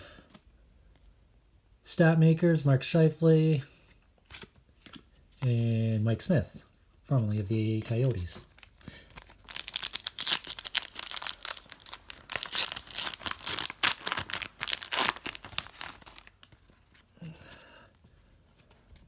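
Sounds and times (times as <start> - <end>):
wrapper tearing and crinkling: 7.8 - 17.0.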